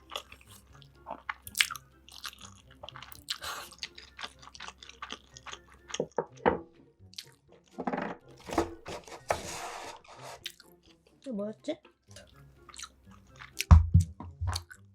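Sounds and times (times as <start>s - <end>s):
crunchy chewing: 0.0s - 6.1s.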